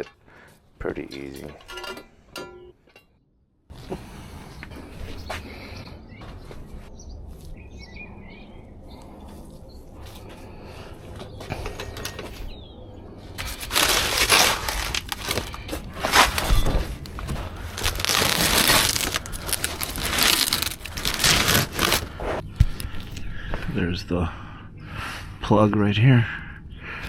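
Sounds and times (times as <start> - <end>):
crunching and rustling handling noise: 13.3 - 23.6.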